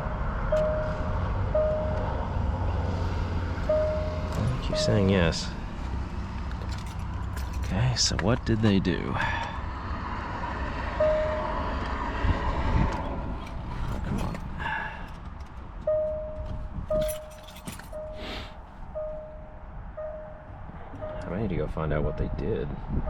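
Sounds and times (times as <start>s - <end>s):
electronic warning chime: 0.0s - 2.2s, 3.6s - 5.5s, 11.0s - 11.8s, 15.9s - 22.7s.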